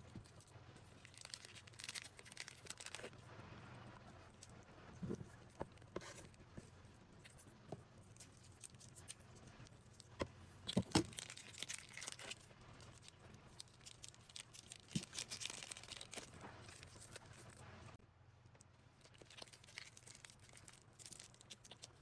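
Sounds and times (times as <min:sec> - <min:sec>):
slime crinkling and tearing: 0:00.2 - 0:03.1, 0:08.0 - 0:17.6, 0:19.0 - 0:22.0.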